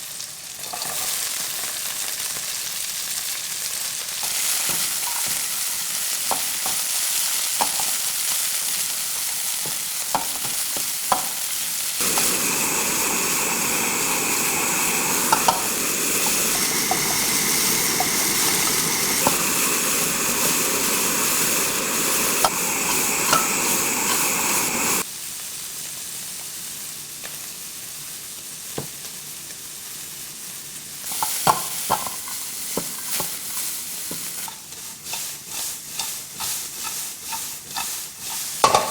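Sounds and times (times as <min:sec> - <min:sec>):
food sizzling in a pan: 0:00.0 - 0:38.9
spatula knocking against pan: 0:38.6 - 0:38.9.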